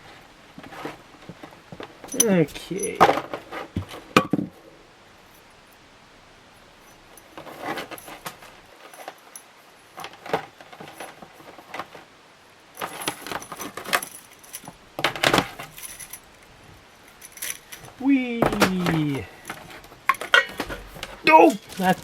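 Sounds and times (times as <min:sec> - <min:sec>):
metal parts rattling and clinking: 0:02.0 - 0:03.6, 0:06.8 - 0:11.9, 0:12.8 - 0:18.0, 0:18.6 - 0:22.0.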